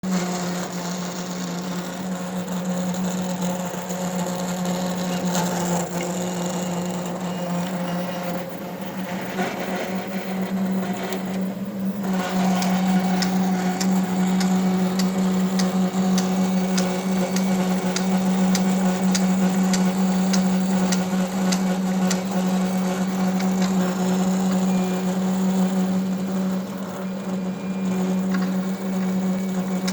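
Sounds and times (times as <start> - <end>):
printer motor humming: 0.0 - 29.9
regular clicks: 11.0 - 22.4.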